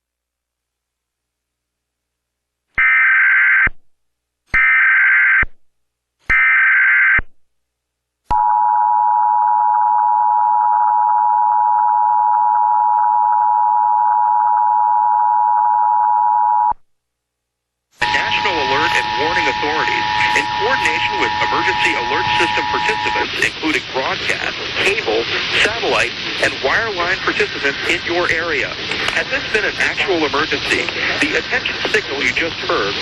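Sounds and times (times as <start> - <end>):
two-tone alert signal: 18.0 - 23.3
buzzing data tones: 18.0 - 24.4.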